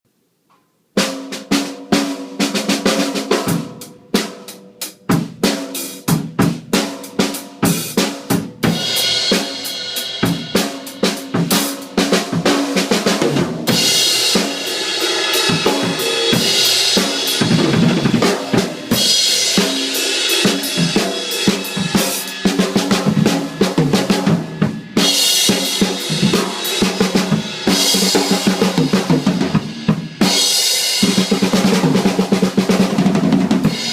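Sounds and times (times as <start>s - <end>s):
drum kit hits: 1.0s - 33.9s
cymbals crashing: 13.7s - 29.0s.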